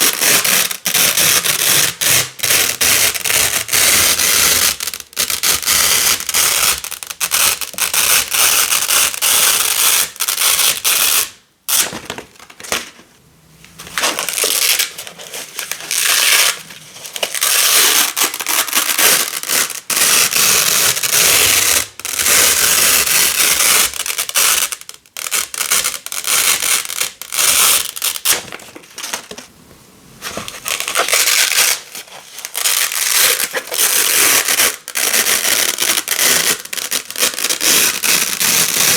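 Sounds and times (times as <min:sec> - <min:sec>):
velcro tape ripping apart: 0:15.6 - 0:28.4, 0:30.7 - 0:38.9.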